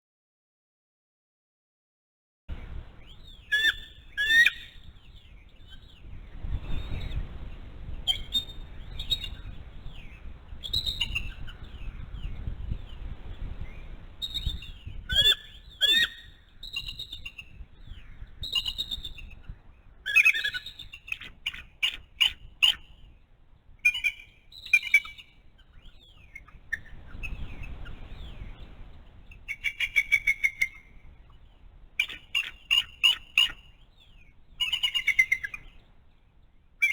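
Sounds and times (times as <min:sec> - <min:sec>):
wind rumble on microphone: 0:02.5 - 0:36.2
forest birds singing: 0:02.5 - 0:36.9
eagle piping chirps: 0:02.6 - 0:07.2, 0:08.0 - 0:23.1, 0:23.8 - 0:28.6, 0:29.3 - 0:35.8
eagle chattering calls: 0:20.1 - 0:22.8, 0:32.0 - 0:33.6, 0:34.6 - 0:35.7.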